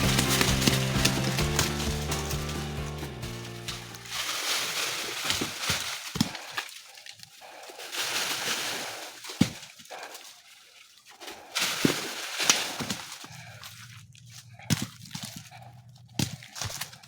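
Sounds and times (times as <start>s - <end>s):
intro music: 0.0s - 4.2s
pigs chewing feed: 0.0s - 17.0s.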